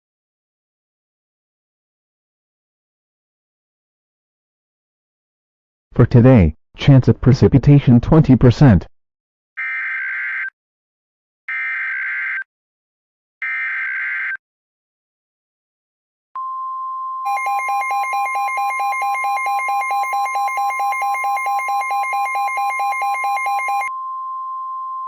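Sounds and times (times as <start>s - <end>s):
harsh alternating attention tone: 17.3s - 23.9s.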